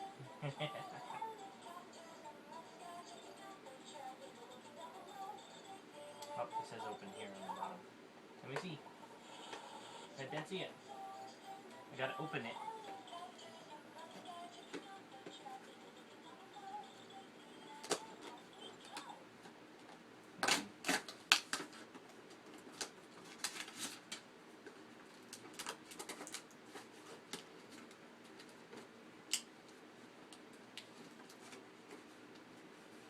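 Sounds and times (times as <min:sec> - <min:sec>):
cardboard packaging being opened: 0:22.7 - 0:24.2.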